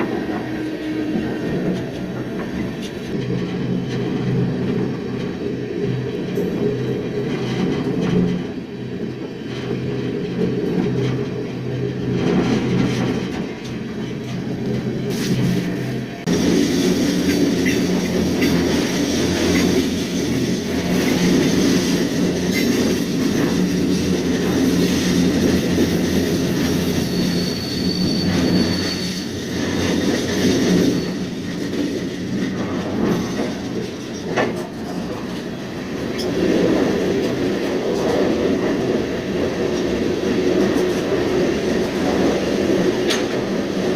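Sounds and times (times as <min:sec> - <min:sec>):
train wheels rumbling: 0:00.0 - 0:43.9
wheel squeal: 0:26.0 - 0:31.5.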